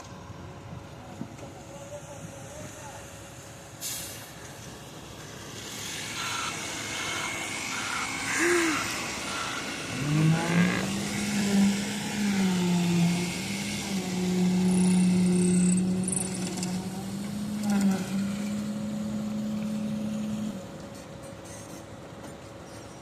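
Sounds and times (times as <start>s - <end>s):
construction site din: 0.0s - 23.0s
motor spinning: 5.9s - 20.6s.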